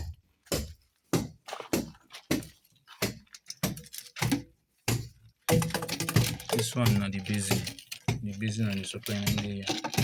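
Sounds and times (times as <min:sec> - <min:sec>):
footsteps: 0:00.0 - 0:05.1.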